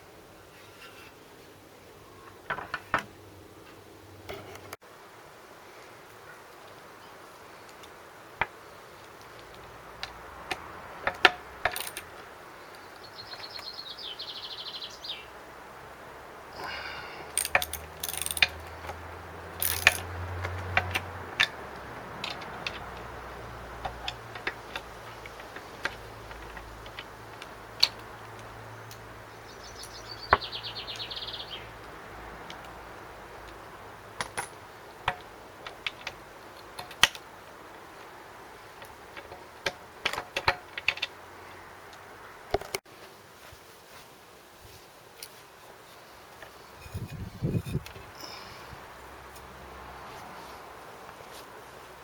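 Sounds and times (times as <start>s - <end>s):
tools and metal parts clanking: 11.0s - 12.2s, 17.3s - 21.6s, 34.2s - 37.2s
ratchet wrench clicking: 11.6s - 12.1s, 17.4s - 18.7s, 19.6s - 20.1s.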